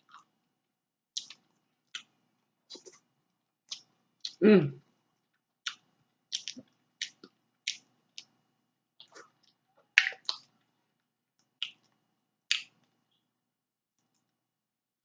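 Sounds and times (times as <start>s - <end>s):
mouth smacking while chewing: 1.2s - 2.1s, 2.7s - 3.0s, 3.7s - 4.4s, 5.6s - 8.3s, 9.0s - 10.6s.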